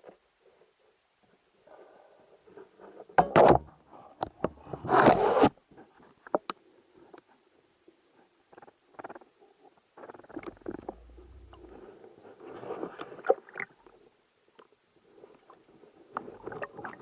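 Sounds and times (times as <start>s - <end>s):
rubbing and scraping handling noise: 4.6s - 6.2s.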